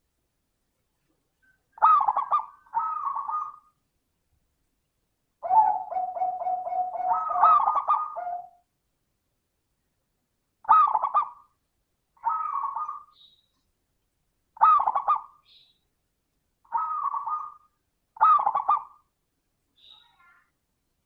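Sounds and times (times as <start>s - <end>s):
dove cooing: 1.8s - 3.6s, 5.4s - 8.6s
faint high chirps: 13.0s - 13.7s, 15.4s - 15.9s, 19.7s - 20.6s.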